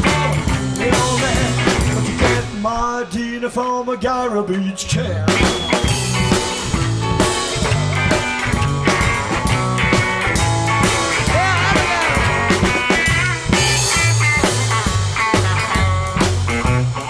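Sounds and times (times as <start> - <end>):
upright double bass: 0.0 - 3.0, 4.9 - 17.0
drums: 0.0 - 17.0
lead guitar bent notes: 4.1 - 17.0.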